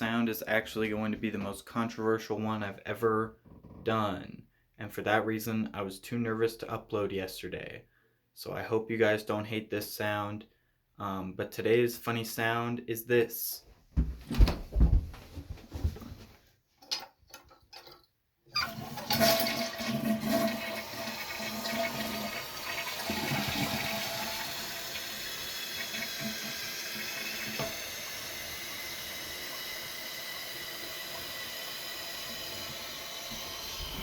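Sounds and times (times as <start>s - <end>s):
toilet flushing: 18.5s - 34.0s
running water hiss: 20.3s - 34.0s.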